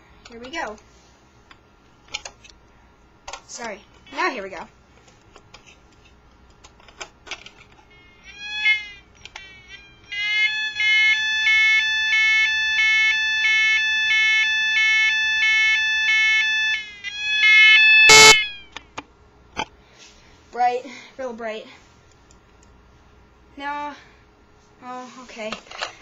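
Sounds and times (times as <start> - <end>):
two-tone electronic siren: 7.9 - 18.7
rising electronic chirps: 17.4 - 18.5.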